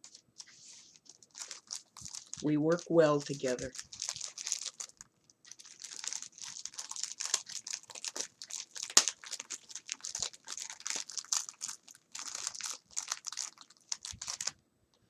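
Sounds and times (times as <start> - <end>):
wrapping crinkling: 0.0 - 14.6.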